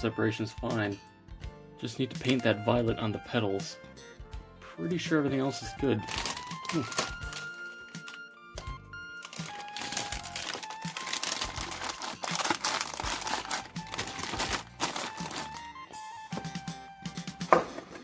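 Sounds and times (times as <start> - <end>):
background music: 0.0 - 18.0
plastic bags crinkling: 6.0 - 8.2, 9.1 - 15.7
plastic runners crackling: 6.0 - 15.7.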